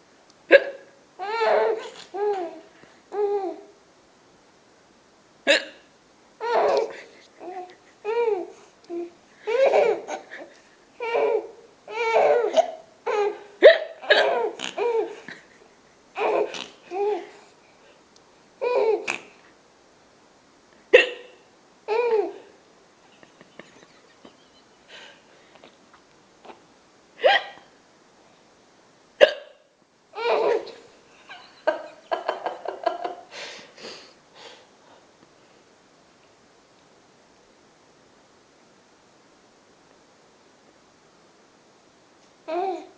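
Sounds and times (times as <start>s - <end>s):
woman hiccuping: 0.5s - 0.9s, 5.5s - 5.9s, 13.6s - 15.0s, 20.9s - 21.4s, 27.2s - 27.7s, 29.2s - 29.6s
child laughing: 30.2s - 33.3s.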